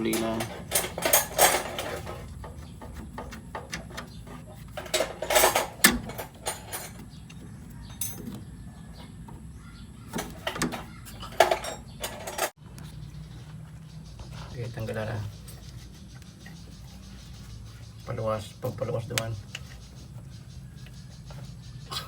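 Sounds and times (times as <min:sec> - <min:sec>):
metal tools clinking: 0:00.0 - 0:09.1, 0:10.1 - 0:12.6.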